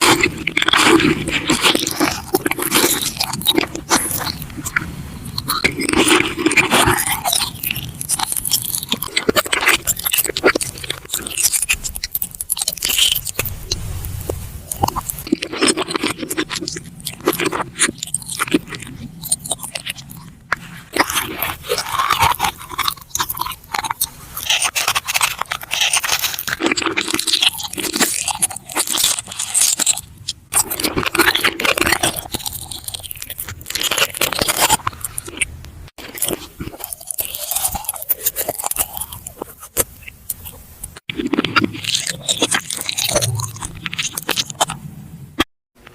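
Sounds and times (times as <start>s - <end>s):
chewing and mouth sounds: 0.0s - 45.9s
person crunching food: 0.0s - 45.9s.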